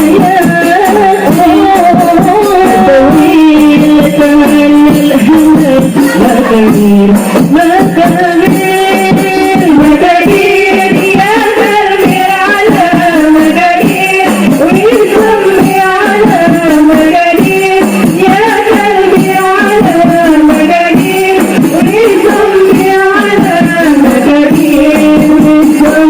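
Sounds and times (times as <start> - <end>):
frame drums: 0.0 - 26.0
person singing ornamented melody: 0.0 - 26.0.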